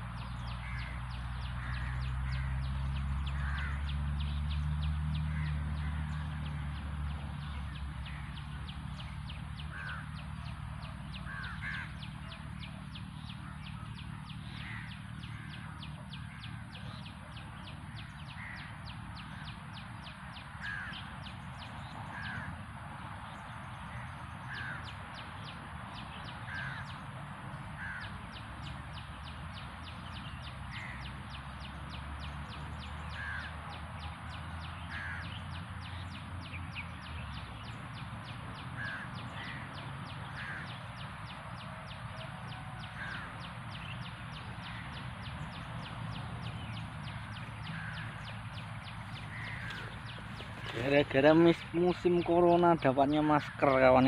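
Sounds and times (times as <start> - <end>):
bird calling: 0.0 - 4.4, 7.4 - 54.0.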